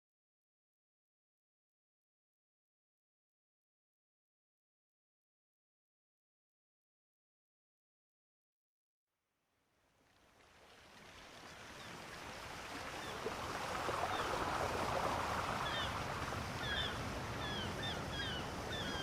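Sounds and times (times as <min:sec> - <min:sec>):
steady rushing surf noise: 0:12.5 - 0:19.0
small birds chirping: 0:15.5 - 0:19.0.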